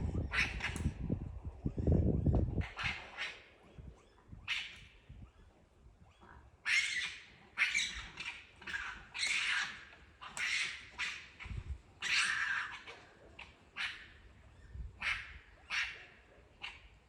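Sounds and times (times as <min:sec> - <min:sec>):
animal screeching harshly: 0:06.6 - 0:11.3, 0:12.0 - 0:12.9.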